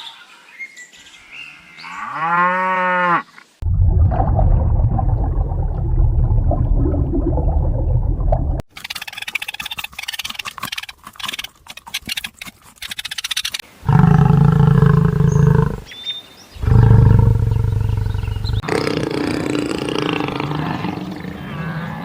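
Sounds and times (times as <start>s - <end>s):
crackling clicking noise: 8.7s - 13.7s.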